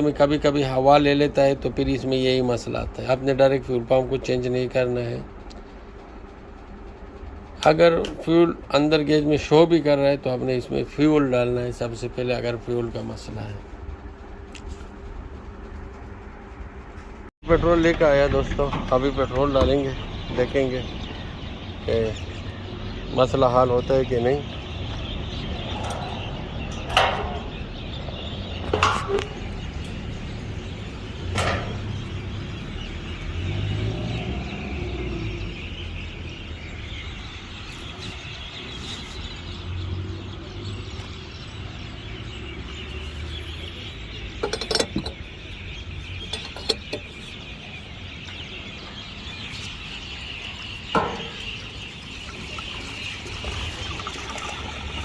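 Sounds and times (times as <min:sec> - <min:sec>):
sharp clinks and knocks: 0:44.4 - 0:45.3, 0:46.3 - 0:47.1.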